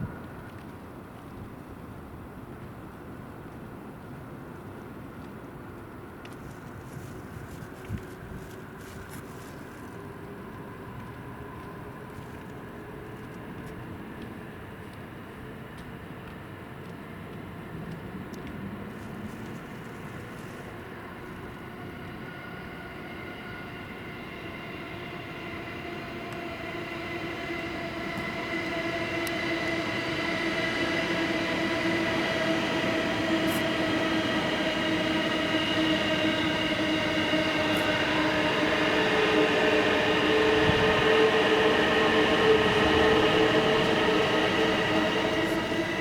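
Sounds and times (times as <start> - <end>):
multi-tone whine: 18.6 - 46.0
electric train running: 19.0 - 46.0.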